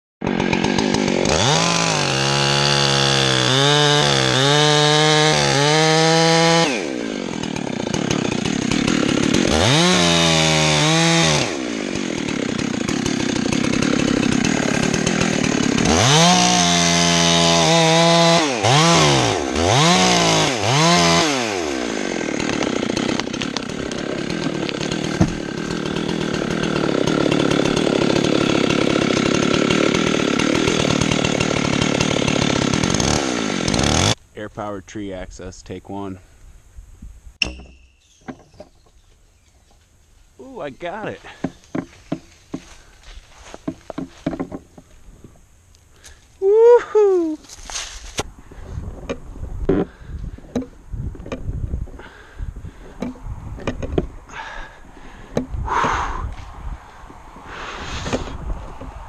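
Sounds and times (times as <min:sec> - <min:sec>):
small engine revving: 0:00.4 - 0:23.7.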